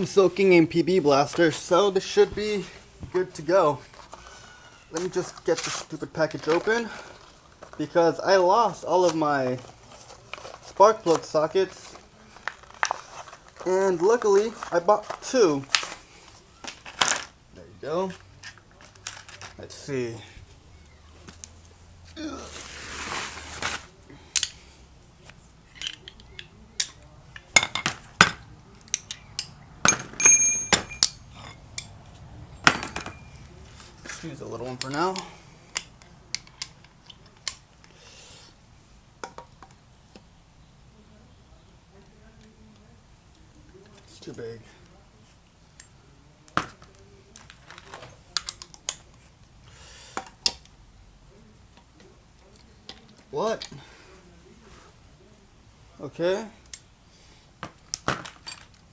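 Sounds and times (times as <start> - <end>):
metal sockets clinking: 25.7 - 32.0, 32.6 - 33.8, 34.7 - 37.6.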